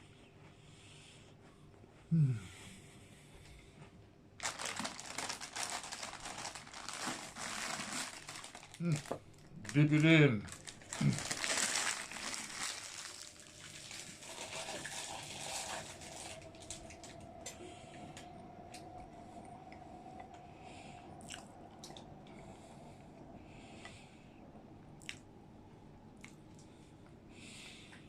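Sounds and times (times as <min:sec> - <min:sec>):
biscuit being chewed: 0:25.0 - 0:25.3.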